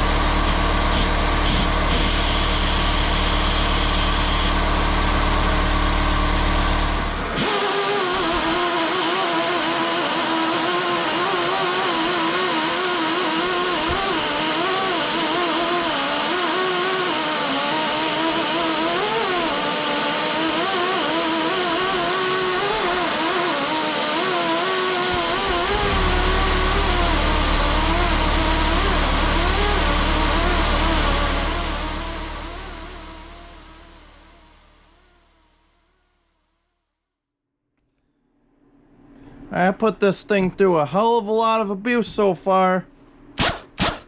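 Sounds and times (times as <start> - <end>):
pneumatic grinder whining: 0.0 - 35.6
low steady hum: 25.5 - 36.0.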